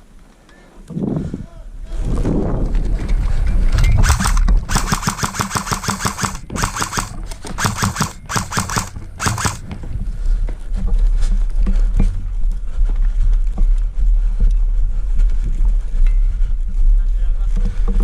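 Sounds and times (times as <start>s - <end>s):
airsoft rifle firing bursts: 3.8s - 9.7s.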